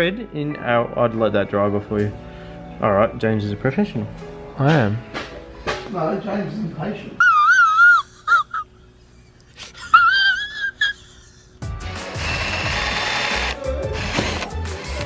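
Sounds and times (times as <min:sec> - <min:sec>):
dog whining: 0:07.2 - 0:08.7.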